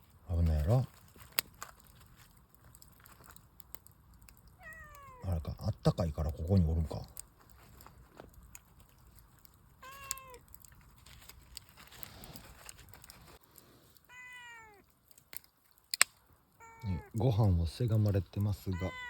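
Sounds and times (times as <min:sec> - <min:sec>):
cat meowing: 0:04.6 - 0:05.4, 0:09.8 - 0:10.6, 0:14.0 - 0:14.8, 0:16.6 - 0:17.2, 0:18.6 - 0:19.0.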